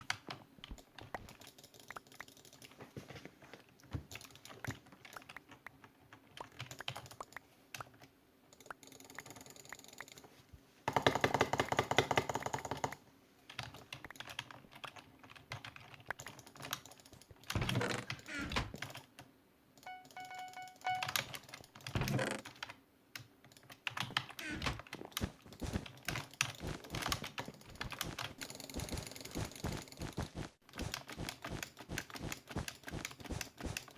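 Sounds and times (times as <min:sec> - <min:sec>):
steady pitched beep: 0:19.9 - 0:21.2.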